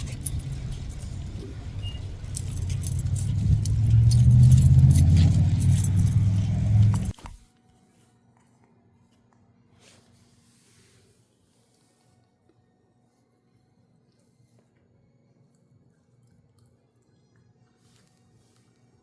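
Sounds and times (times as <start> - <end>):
light jingling clinks: 0.0 - 7.2
road noise inside car: 0.0 - 7.4.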